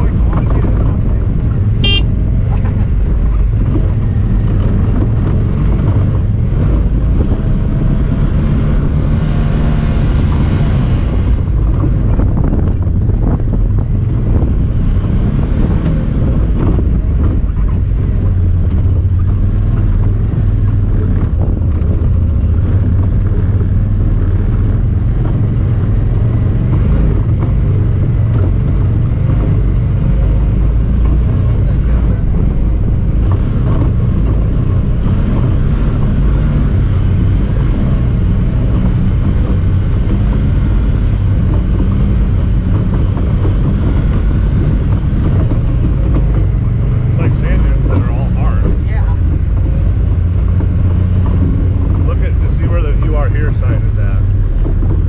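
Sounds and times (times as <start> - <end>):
engine droning while driving: 0.0 - 55.0
short knocks and rattles: 15.7 - 55.0.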